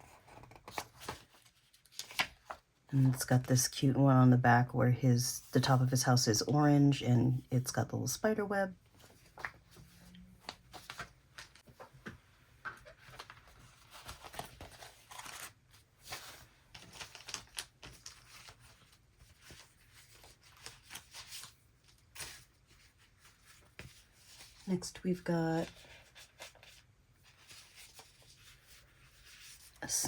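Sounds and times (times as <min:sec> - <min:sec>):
paper rustling and crinkling: 0:00.0 - 0:03.5, 0:08.8 - 0:24.7, 0:25.6 - 0:30.0.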